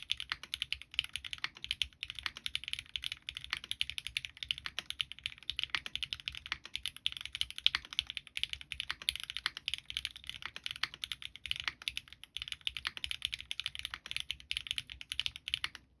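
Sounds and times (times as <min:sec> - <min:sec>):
fast typing on mechanical keyboard: 0:00.0 - 0:15.8.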